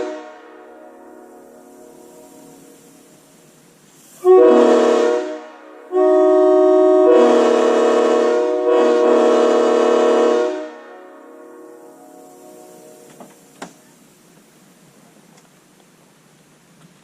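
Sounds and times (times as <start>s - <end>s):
locomotive horn chord blasts: 0.0s - 3.4s, 4.2s - 13.5s
faint echoing horn tones: 0.0s - 13.5s.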